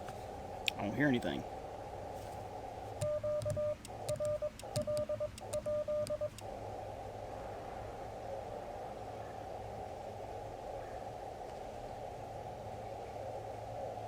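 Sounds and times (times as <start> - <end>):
radio hiss: 0.0 - 1.6
morse code beeps: 3.0 - 6.4.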